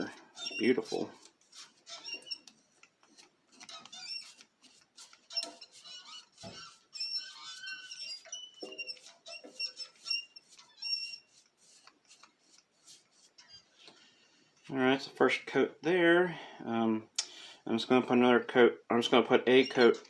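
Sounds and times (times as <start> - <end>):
cloth squeaking on wood: 0.0 - 13.8.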